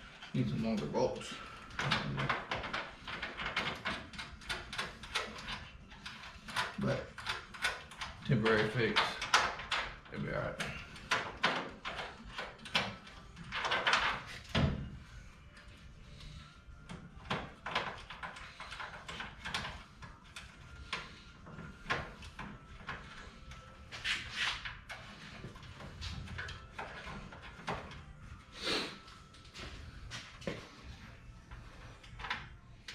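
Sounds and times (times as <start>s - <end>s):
clicks and clanks of car parts: 1.7s - 14.8s.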